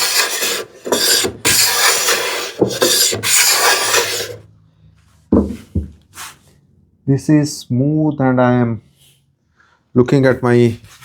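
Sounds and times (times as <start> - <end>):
hand plane rasping on wood: 0.0 - 4.4.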